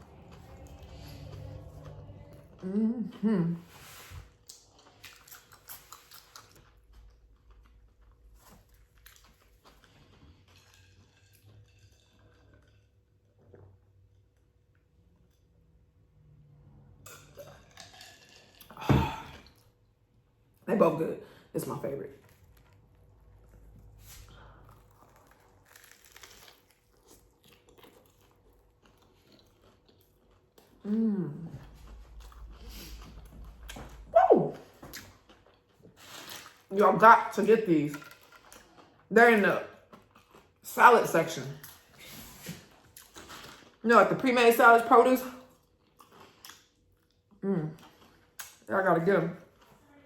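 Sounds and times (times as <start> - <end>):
chewing crunchy food: 4.4 - 14.9, 22.2 - 36.7, 37.9 - 40.7, 41.6 - 43.9, 45.4 - 48.7, 49.4 - 50.0.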